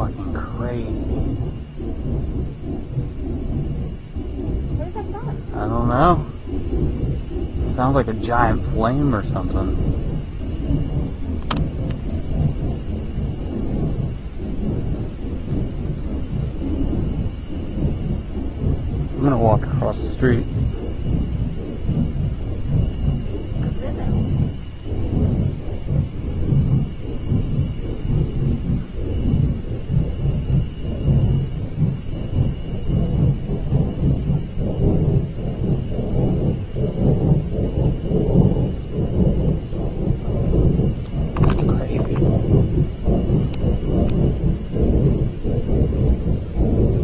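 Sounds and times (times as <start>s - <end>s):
low rumbling drone: 0.0s - 47.0s.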